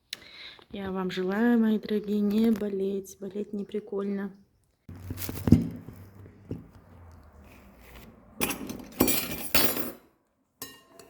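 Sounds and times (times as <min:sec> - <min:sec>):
dishes scraping and clinking: 0:07.8 - 0:11.0.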